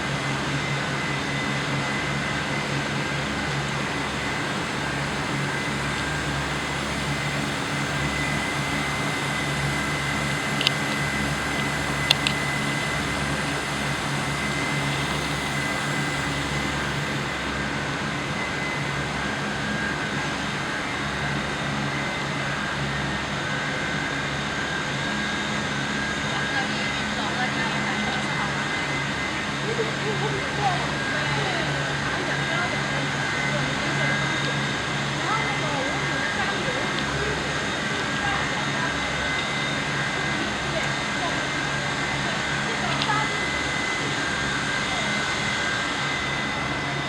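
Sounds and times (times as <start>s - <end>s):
heat pump fan humming: 0.0s - 47.0s
short clicks: 12.0s - 12.4s.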